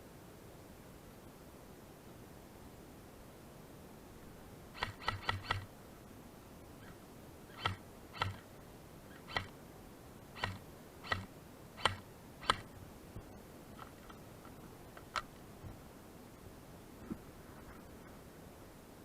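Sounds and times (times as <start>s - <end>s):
airsoft guns firing single shots: 4.8s - 5.7s, 7.6s - 8.4s, 10.4s - 12.7s.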